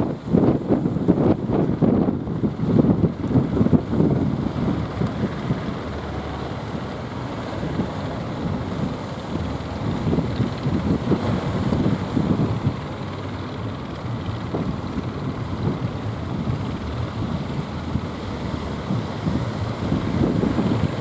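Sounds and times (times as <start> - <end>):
steady low rumble: 0.0 - 21.0
wind buffeting microphone: 0.0 - 21.0.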